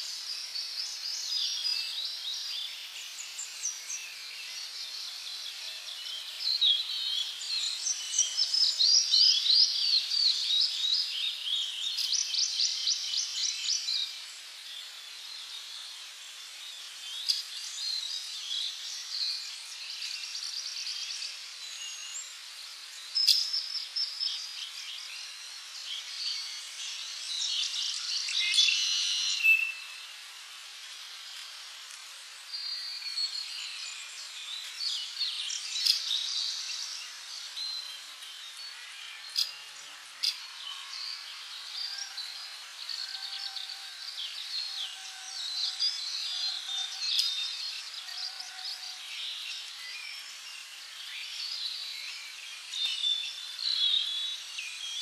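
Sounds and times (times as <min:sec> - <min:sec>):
insect hiss: 0:00.0 - 0:55.0
birds chirping and trilling: 0:32.4 - 0:55.0.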